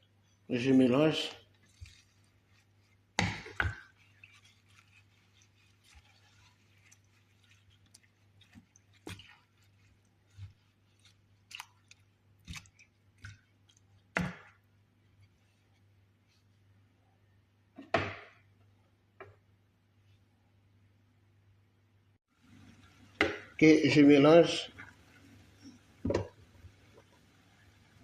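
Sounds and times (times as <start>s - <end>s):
utensil stirring in a saucepan: 0.0s - 16.6s, 22.4s - 28.0s
knocks and scrapes against pan: 3.1s - 7.1s.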